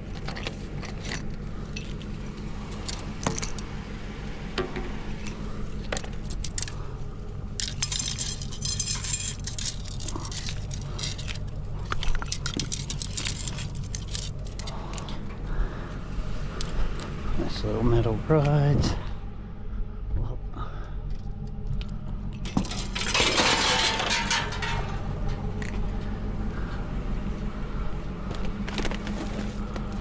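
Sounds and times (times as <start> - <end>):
scrap metal clinking and rattling: 0.0 - 3.7, 4.6 - 6.9, 7.5 - 15.4, 22.4 - 26.1
steady low hum: 0.0 - 30.0.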